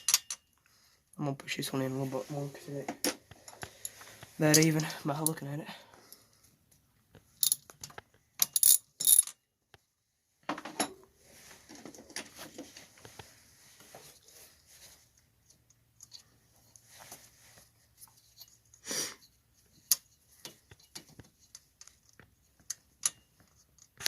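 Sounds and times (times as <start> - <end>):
metal tools clinking and scraping: 0.0 - 0.6, 3.0 - 5.4, 7.4 - 9.4, 18.0 - 21.7, 23.0 - 23.6.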